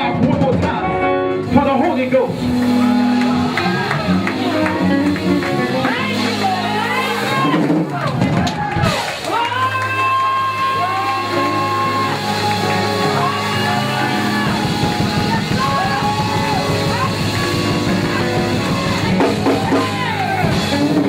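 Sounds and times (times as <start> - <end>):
drum kit: 0.0 - 21.0
keyboard chords: 0.0 - 21.0
voices singing and shouting: 5.9 - 20.8.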